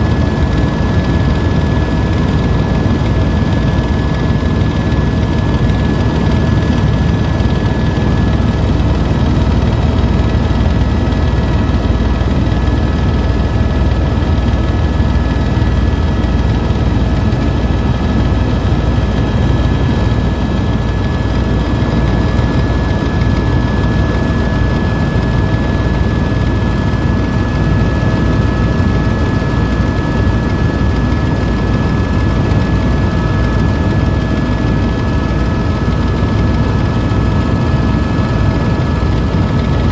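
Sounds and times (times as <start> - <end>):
helicopter rotor and turbine rumble: 0.0 - 39.9.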